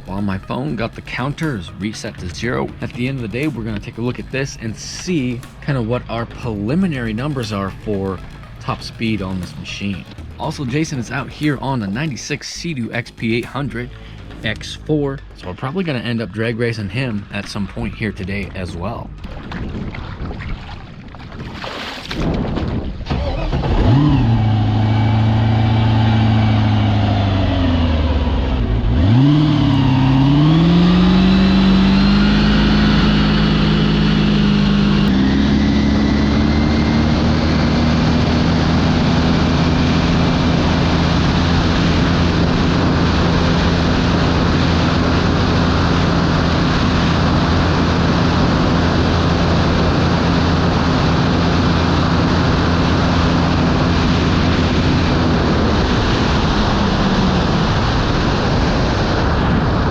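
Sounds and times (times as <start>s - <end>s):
jet ski engine revving: 0.0s - 14.6s, 23.1s - 59.9s
wind noise: 18.5s - 59.9s.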